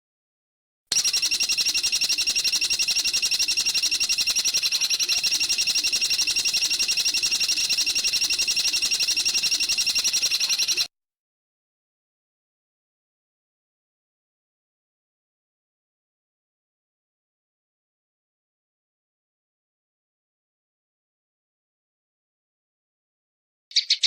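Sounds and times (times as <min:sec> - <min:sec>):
songbird trilling: 0:23.7 - 0:24.0.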